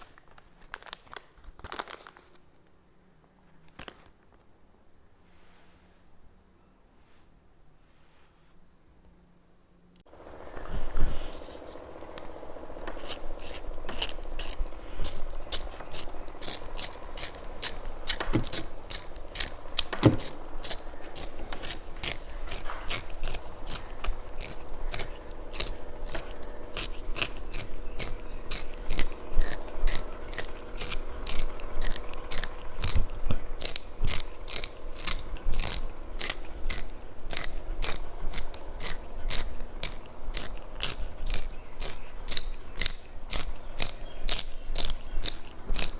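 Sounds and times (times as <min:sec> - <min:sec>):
kinetic sand crisp clicks: 0:10.0 - 0:45.9.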